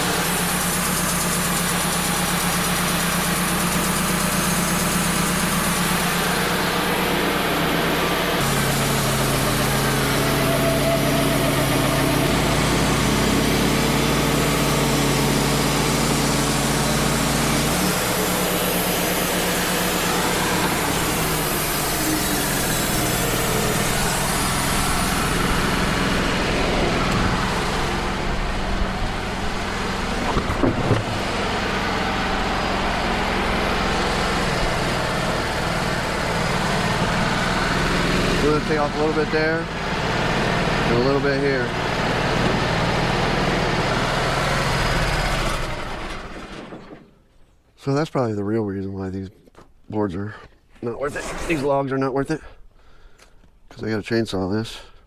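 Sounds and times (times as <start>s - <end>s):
sawmill engine running: 0.0s - 48.0s
knocks: 30.2s - 31.2s.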